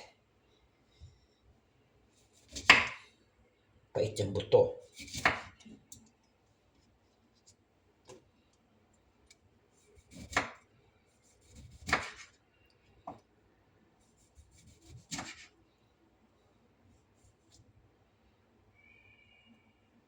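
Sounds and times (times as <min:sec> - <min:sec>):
knife slicing lemons: 0:02.4 - 0:03.0, 0:05.0 - 0:05.6, 0:10.0 - 0:10.6, 0:11.4 - 0:12.3, 0:14.3 - 0:15.5.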